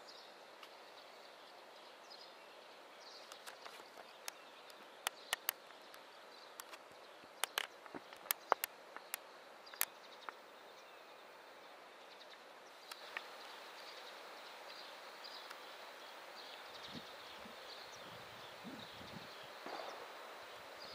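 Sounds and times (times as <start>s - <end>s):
sharp clicks and ticks: 3.3s - 6.0s, 7.4s - 10.4s.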